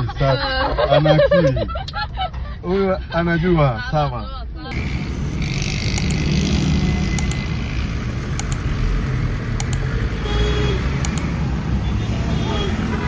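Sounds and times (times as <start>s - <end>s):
faint paired clicks: 4.7s - 6.4s, 7.1s - 12.0s
car engine and road rumble: 4.7s - 13.0s.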